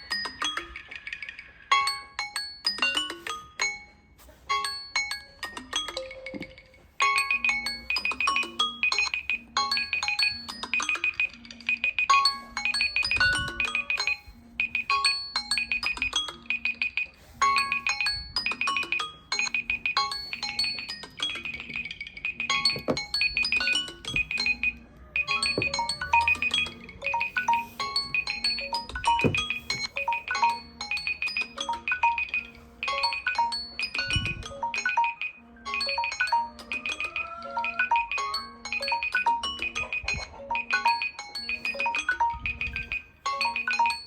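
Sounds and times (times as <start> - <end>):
smartphone alarm ringtones: 0.0 - 44.0.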